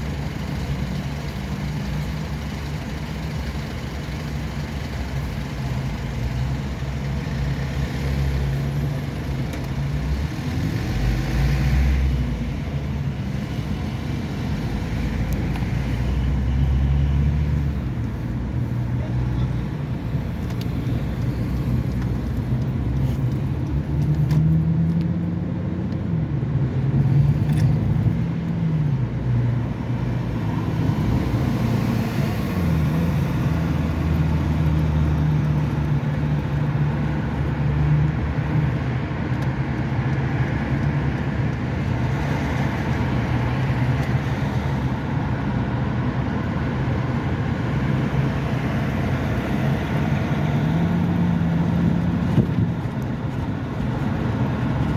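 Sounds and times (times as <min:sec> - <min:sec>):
car engine hum: 0:00.0 - 0:54.9
tyre and road noise: 0:00.0 - 0:54.9.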